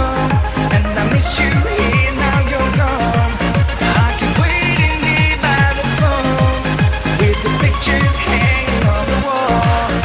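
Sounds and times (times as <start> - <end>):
synth melody: 0.0 - 9.6
kick drum: 0.0 - 10.0.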